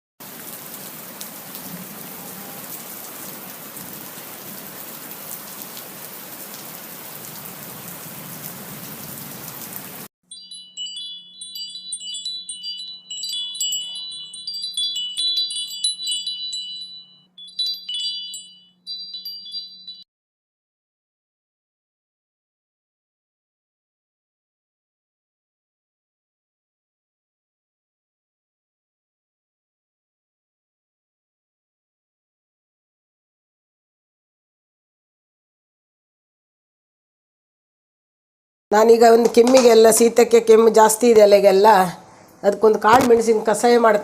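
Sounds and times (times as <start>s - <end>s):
tinkling wind chimes: 10.2s - 20.1s.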